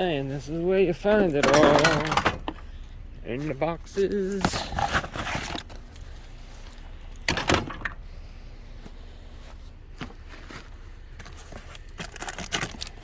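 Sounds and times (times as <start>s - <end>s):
objects clunking and rattling: 1.0s - 3.0s, 3.9s - 8.1s, 10.0s - 13.0s.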